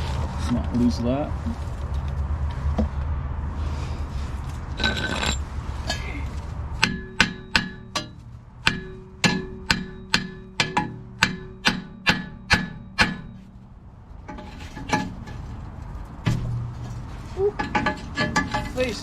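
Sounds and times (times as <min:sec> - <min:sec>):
hammer striking metal: 0:06.8 - 0:13.5.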